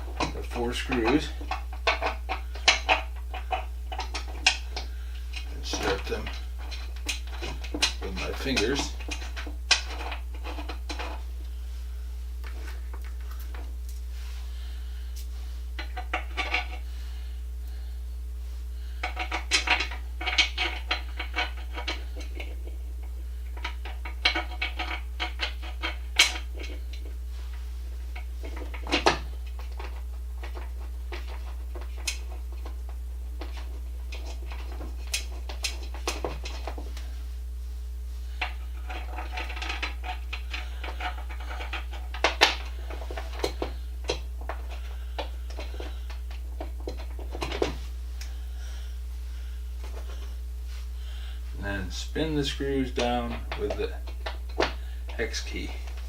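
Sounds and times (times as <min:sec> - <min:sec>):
steady low hum: 0:00.0 - 0:56.0.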